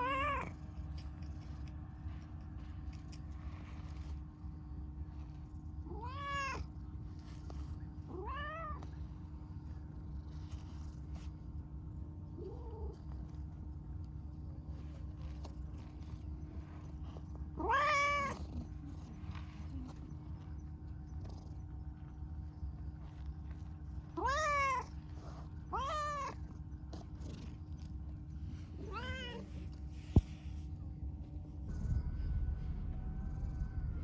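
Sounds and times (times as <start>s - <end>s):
cat meowing: 0.0s - 0.5s, 5.9s - 6.6s, 8.1s - 8.9s, 17.6s - 18.4s, 24.2s - 24.9s, 25.7s - 26.4s, 28.8s - 29.5s
steady low hum: 0.0s - 34.0s.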